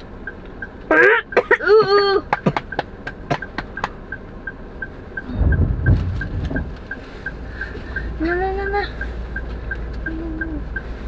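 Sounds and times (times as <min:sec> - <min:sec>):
car turn signal ticking: 0:00.0 - 0:11.0
low rumble: 0:05.1 - 0:08.2.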